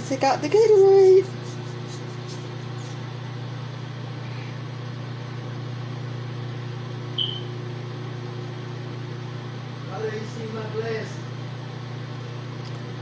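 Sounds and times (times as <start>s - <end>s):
microwave oven humming: 0.0s - 13.0s
sharp high click: 7.2s - 7.5s.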